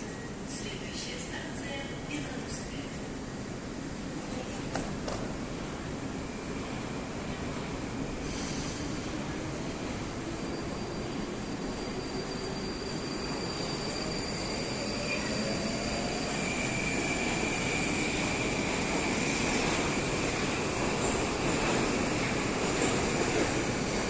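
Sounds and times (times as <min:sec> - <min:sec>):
train wheels rumbling on rails: 0:04.2 - 0:05.9, 0:14.1 - 0:24.0.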